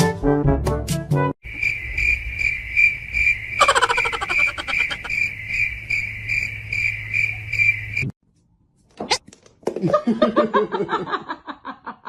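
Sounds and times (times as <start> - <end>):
chorus of shrill calling: 2.8 - 5.3.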